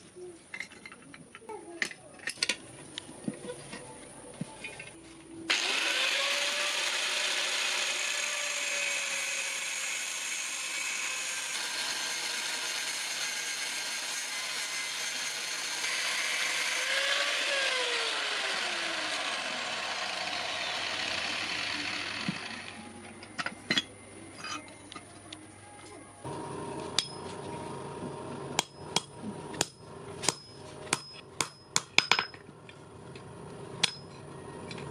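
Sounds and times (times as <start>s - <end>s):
geared machine whirring: 5.5s - 22.9s.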